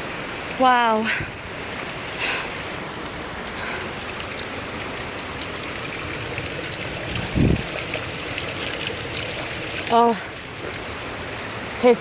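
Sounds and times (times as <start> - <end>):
water flowing: 0.0 - 12.0.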